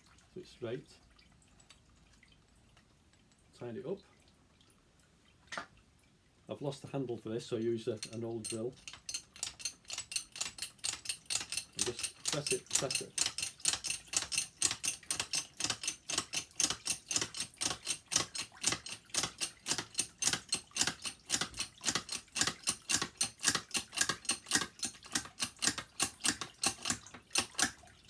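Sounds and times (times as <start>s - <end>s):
drill clicking: 8.8s - 27.7s.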